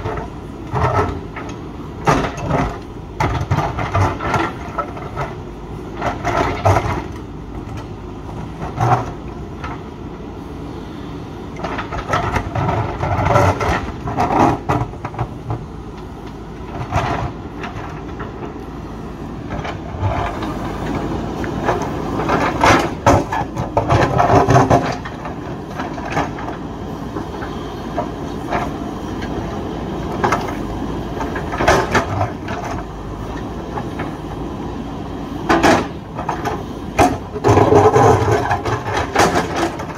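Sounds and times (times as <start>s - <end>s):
diesel engine running under load: 0.0s - 39.9s
bucket clattering and scraping rock: 37.0s - 39.9s.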